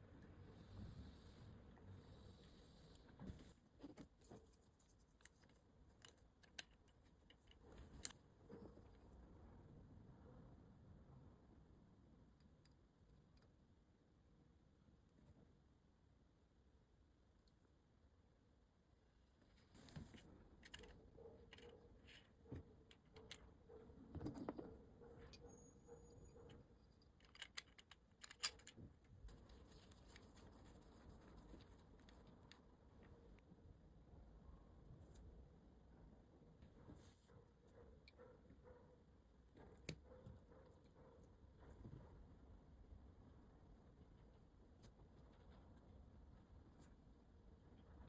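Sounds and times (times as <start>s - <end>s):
small hard parts clicking: 26.9s - 28.8s.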